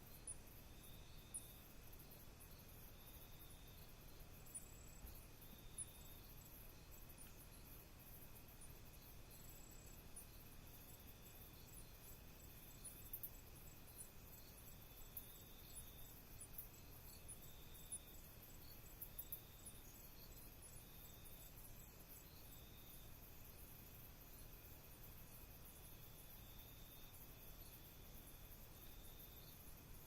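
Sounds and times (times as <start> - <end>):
crickets trilling: 0.1 - 30.0
faint high ticks: 7.1 - 7.6, 13.0 - 13.4.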